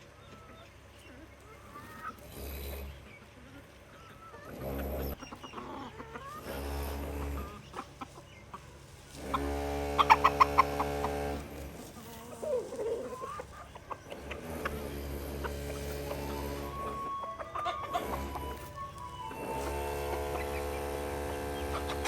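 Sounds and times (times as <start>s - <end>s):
chickens clucking: 0.0s - 22.0s.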